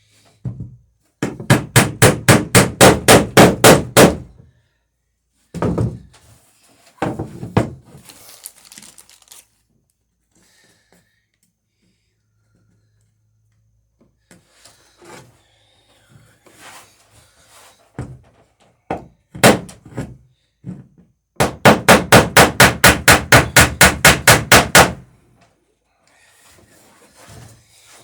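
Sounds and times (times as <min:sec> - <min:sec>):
hammer striking a rivet: 0:01.2 - 0:04.2, 0:21.4 - 0:25.0.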